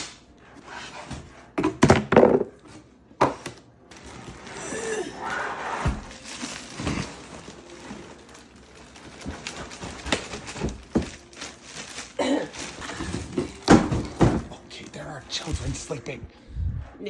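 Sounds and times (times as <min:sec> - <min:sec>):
cardboard packaging rustling: 0:03.5 - 0:16.2
box knocks and thumps: 0:09.2 - 0:11.3, 0:12.8 - 0:14.6.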